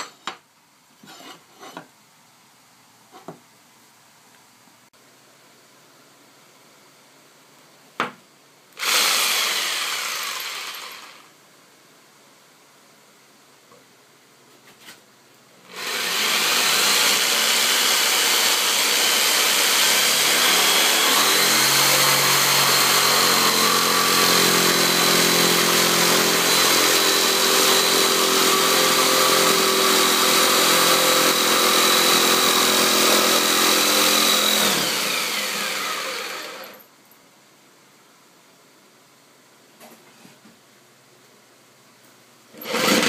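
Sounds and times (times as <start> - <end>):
electric power tool motor whining: 8.8 - 11.3, 15.7 - 36.8, 42.6 - 43.0.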